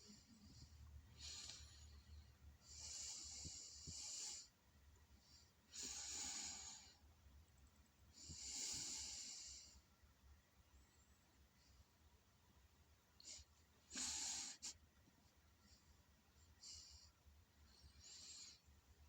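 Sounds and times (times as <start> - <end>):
person breathing with hissing breaths: 0.0 - 4.6, 5.2 - 7.1, 8.1 - 9.9, 13.2 - 14.8, 16.5 - 18.8.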